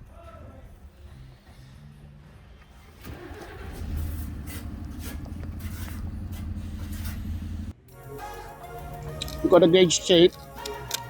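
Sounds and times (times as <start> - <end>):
engine starting and humming: 2.8 - 7.7.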